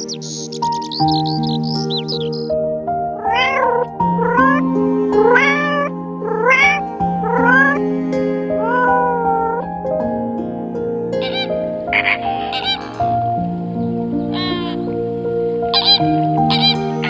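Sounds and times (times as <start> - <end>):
high bird chirps: 0.0 - 2.6, 11.2 - 17.0
gentle background music: 0.0 - 17.0
cat meowing: 3.2 - 4.6, 14.3 - 14.9, 15.7 - 17.0.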